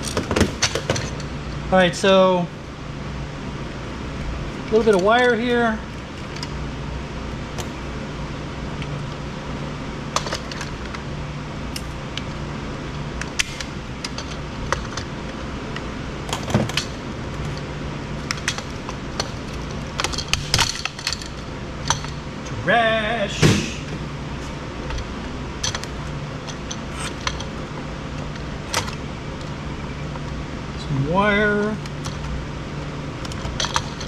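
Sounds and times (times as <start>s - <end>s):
steady low hum: 0.0s - 34.0s
plastic parts clicking and clattering: 13.2s - 22.2s, 28.2s - 29.5s, 33.2s - 34.0s.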